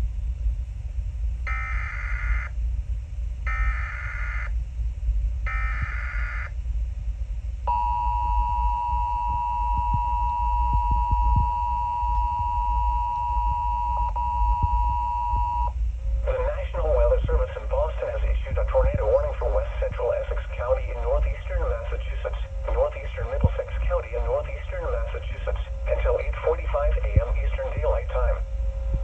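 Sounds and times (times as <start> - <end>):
steady loud attention tone: 7.7 - 28.4.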